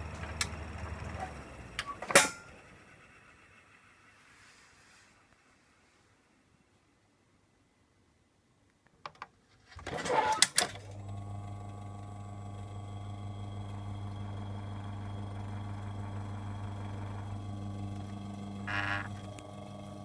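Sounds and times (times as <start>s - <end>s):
fan motor humming: 0.0s - 4.2s, 10.8s - 20.0s.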